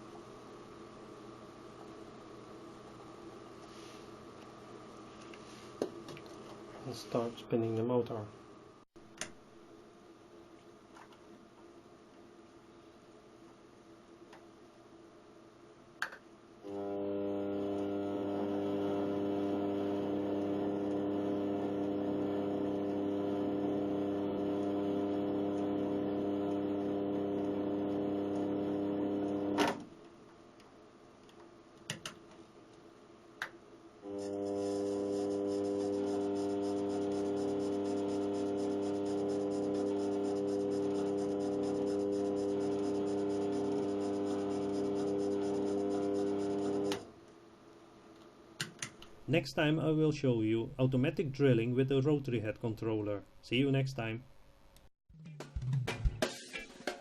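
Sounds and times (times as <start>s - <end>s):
lathe motor whining: 16.7s - 29.6s, 34.1s - 47.0s.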